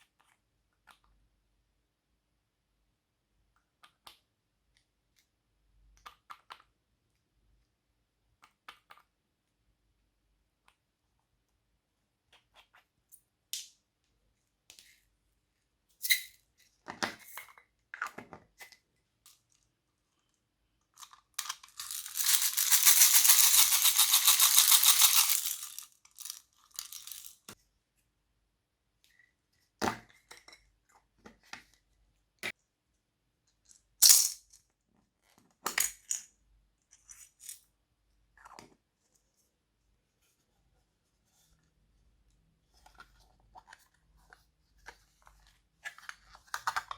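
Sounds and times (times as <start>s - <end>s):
small hard pieces poured rattling: 21.4s - 27.5s.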